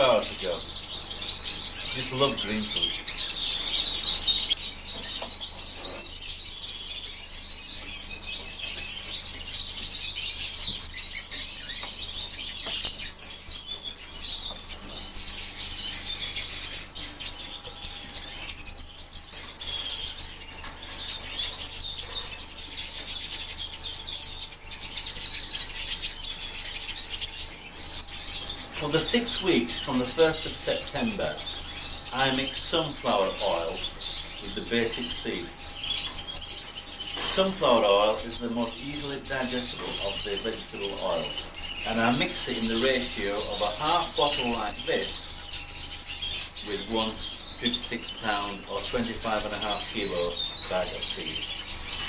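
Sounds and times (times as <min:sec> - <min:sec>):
canaries chirping: 0:00.0 - 0:52.0.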